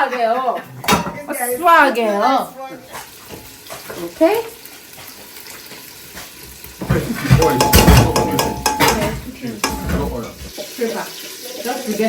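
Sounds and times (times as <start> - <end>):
spoon stirring in a pot: 5.6 - 10.5
metal utensils clinking on pan: 6.7 - 10.5.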